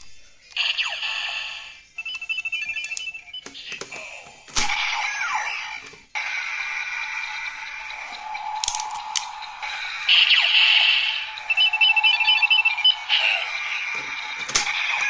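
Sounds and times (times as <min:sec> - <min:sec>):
electronic effect sound burst: 0:06.2 - 0:15.0
rapid high electronic beeps: 0:06.5 - 0:15.0
toy clicks: 0:07.9 - 0:10.4.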